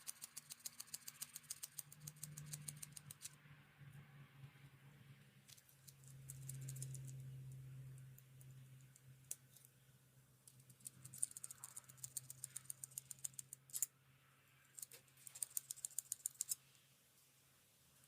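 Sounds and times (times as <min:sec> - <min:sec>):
small sharp clicks: 0:00.0 - 0:03.4, 0:05.5 - 0:09.8, 0:10.4 - 0:13.9, 0:14.7 - 0:16.6
faint low hum: 0:00.0 - 0:18.0.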